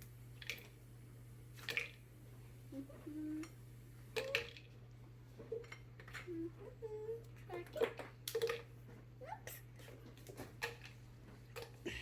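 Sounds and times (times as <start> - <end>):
low electrical hum: 0.0 - 12.0
low hummed voice: 2.7 - 3.6, 5.4 - 8.0.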